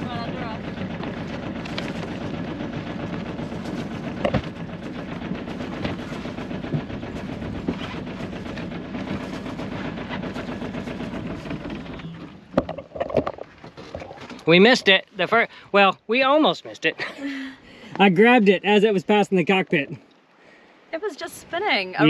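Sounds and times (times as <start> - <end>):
boat engine running: 0.0 - 22.0
short knocks: 4.2 - 4.6.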